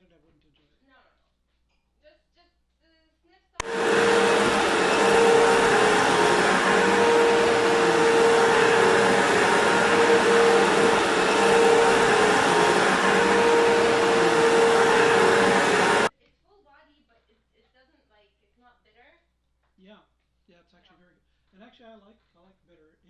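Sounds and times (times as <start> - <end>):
loud hiss-like noise: 3.6 - 16.1.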